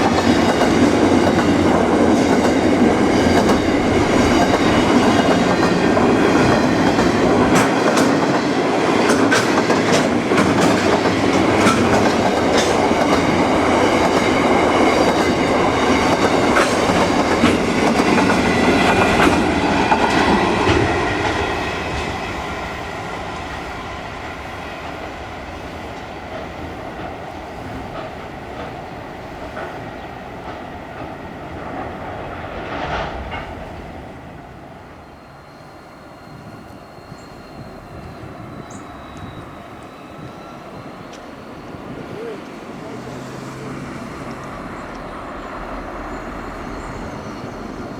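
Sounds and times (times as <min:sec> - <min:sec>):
train wheels clicking over rail joints: 0:00.0 - 0:22.2, 0:24.8 - 0:33.9.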